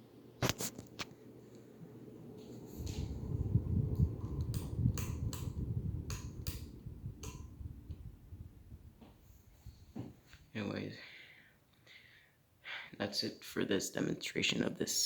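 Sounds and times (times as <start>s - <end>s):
fan air rumbling on microphone: 0.0s - 11.5s.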